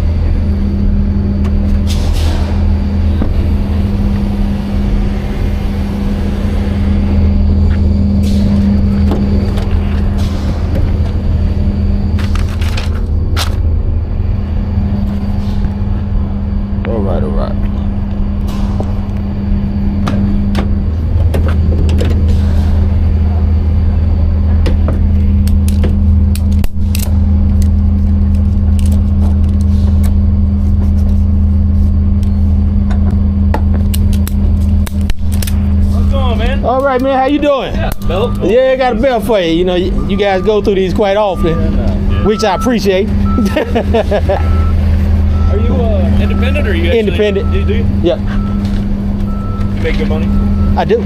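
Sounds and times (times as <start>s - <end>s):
van engine idling: 0.0s - 51.0s.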